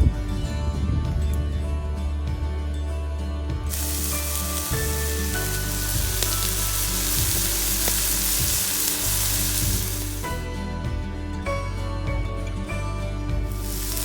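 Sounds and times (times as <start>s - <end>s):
background music with bass line: 0.0s - 14.0s
stove sizzling hiss: 3.7s - 10.4s, 13.5s - 14.0s.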